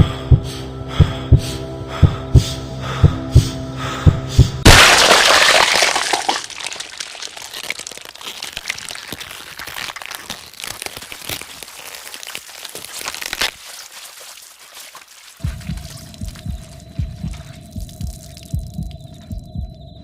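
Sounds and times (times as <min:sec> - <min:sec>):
crackling and crunching clicks: 0:04.7 - 0:14.4.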